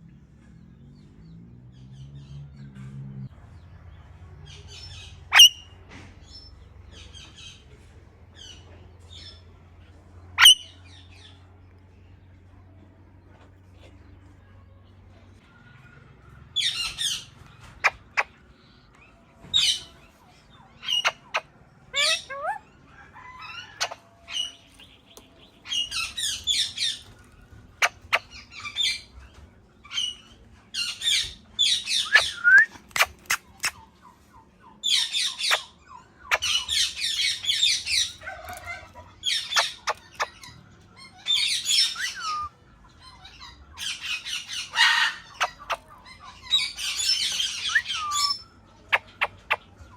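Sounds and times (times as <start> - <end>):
parrot squawking: 5.3 - 5.7, 10.4 - 10.8, 20.8 - 24.6, 34.8 - 42.5, 43.1 - 49.6.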